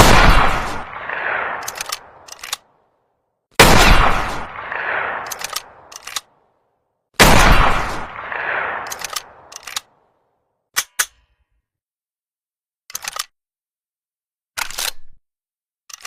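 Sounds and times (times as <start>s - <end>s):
rifle shot echo: 0.0s - 2.3s, 3.6s - 5.9s, 7.2s - 9.5s
rifle bolt clicks and scrapes: 1.6s - 2.7s, 5.2s - 6.4s, 8.8s - 10.0s, 10.8s - 11.4s, 12.9s - 13.4s, 14.6s - 15.2s.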